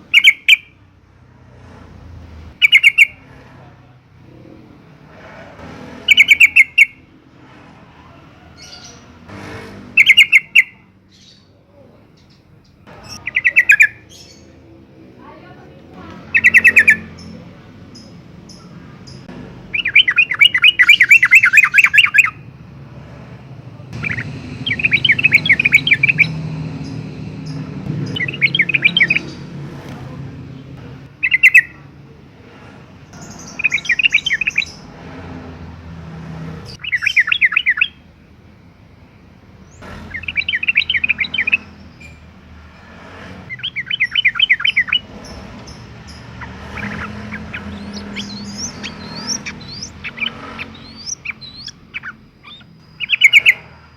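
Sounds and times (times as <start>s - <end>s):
bulbul singing: 0.0s - 0.9s, 2.5s - 3.3s, 6.0s - 7.1s, 9.9s - 15.0s, 16.0s - 22.6s, 23.9s - 31.9s, 33.1s - 35.7s, 36.7s - 38.2s, 39.0s - 42.6s, 43.5s - 53.9s.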